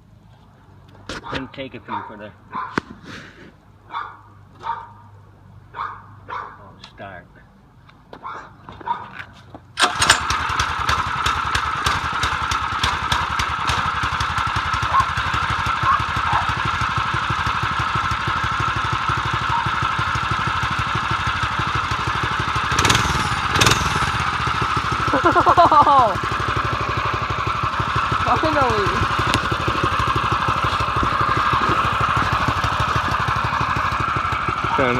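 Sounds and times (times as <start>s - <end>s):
small engine running: 9.8s - 34.9s.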